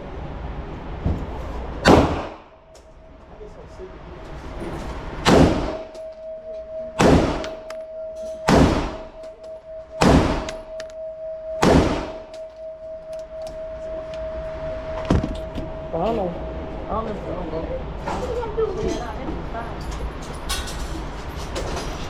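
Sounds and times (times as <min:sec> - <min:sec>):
gunshots with ringing tail: 0:01.8 - 0:02.6, 0:05.2 - 0:05.9, 0:07.0 - 0:07.6, 0:08.5 - 0:09.2, 0:10.0 - 0:10.6, 0:11.6 - 0:12.3.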